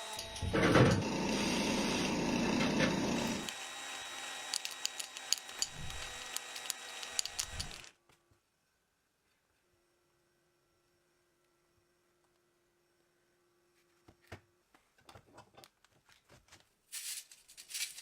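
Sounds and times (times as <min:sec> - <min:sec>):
tool rasping: 0:00.1 - 0:07.9.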